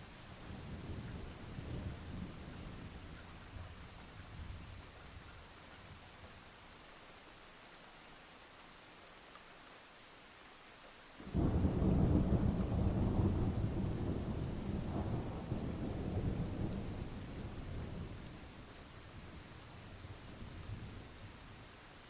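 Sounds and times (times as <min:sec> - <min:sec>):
faint rain hiss: 0:00.0 - 0:22.0
deep rumble of thunder: 0:00.5 - 0:03.2, 0:11.2 - 0:21.3.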